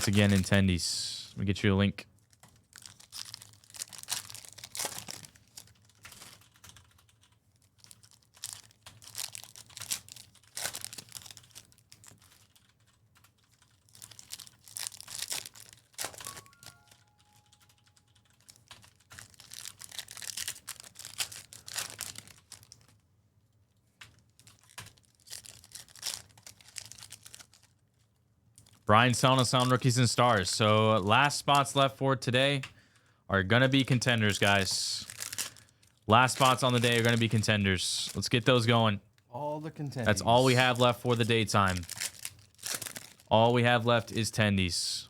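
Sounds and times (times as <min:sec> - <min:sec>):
typing on computer keyboard: 0:05.6 - 0:14.6, 0:15.8 - 0:19.4
electronic chime: 0:16.2 - 0:17.6.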